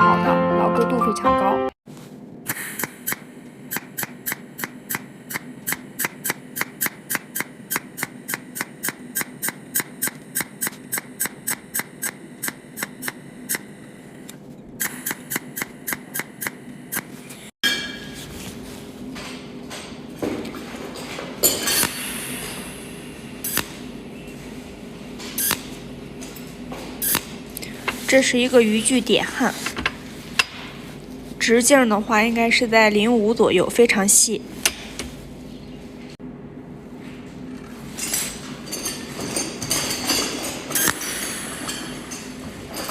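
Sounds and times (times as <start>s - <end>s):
spot welder snaps: 2.5s - 13.7s, 23.4s - 23.8s, 25.4s - 25.8s, 27.0s - 27.7s.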